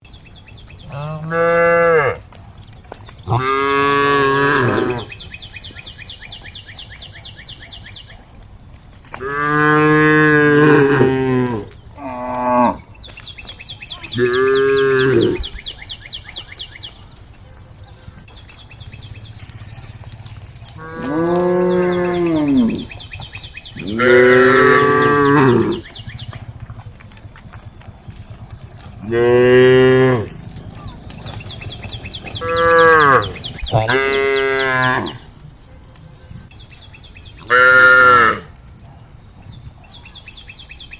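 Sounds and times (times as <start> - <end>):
cows mooing: 0.8 - 2.3, 3.2 - 5.2, 9.2 - 12.9, 14.0 - 15.5, 20.7 - 23.0, 23.8 - 26.5, 28.1 - 35.3, 37.4 - 38.5.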